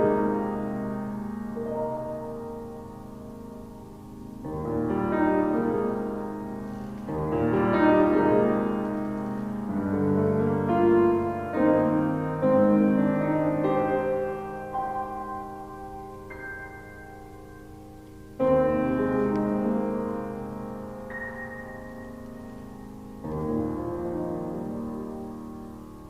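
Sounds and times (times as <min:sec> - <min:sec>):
piano playing slow chords: 0:00.0 - 0:26.0.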